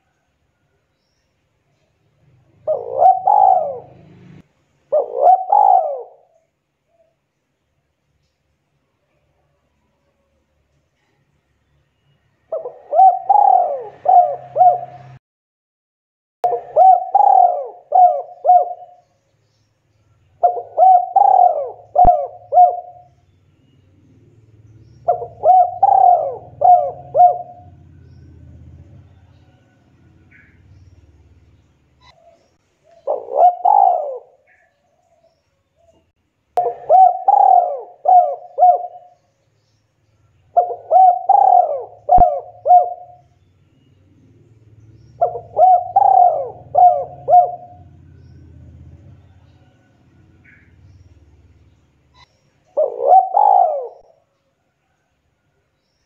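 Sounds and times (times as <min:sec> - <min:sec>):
dove cooing: 0:02.3 - 0:06.4, 0:12.5 - 0:15.2, 0:16.4 - 0:19.1, 0:20.4 - 0:23.2, 0:25.0 - 0:30.9, 0:32.0 - 0:35.4, 0:36.6 - 0:39.2, 0:40.5 - 0:43.3, 0:45.0 - 0:51.0, 0:52.1 - 0:55.0.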